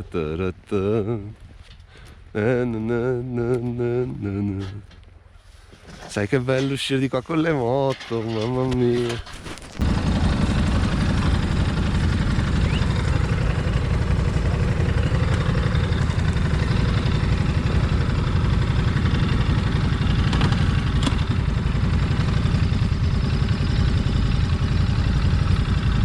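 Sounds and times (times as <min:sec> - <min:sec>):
motorcycle engine idling: 0:09.8 - 0:26.0.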